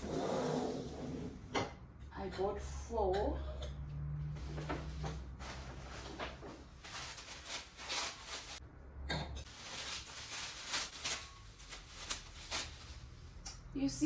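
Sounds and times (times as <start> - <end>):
packaging rustling: 5.4 - 8.6, 9.5 - 13.1.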